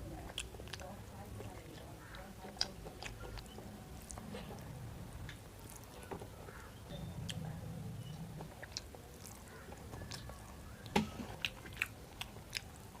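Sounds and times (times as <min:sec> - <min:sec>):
chewing and biting food: 0:00.0 - 0:04.7, 0:05.3 - 0:13.0.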